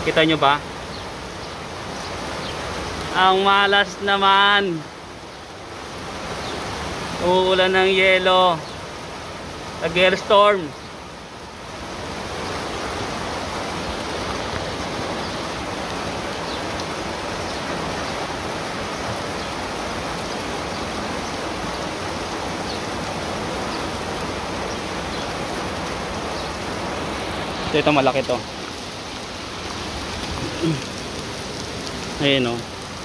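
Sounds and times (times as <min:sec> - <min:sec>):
rain and hail hissing: 0:00.0 - 0:33.0
hailstones ticking: 0:13.7 - 0:33.0.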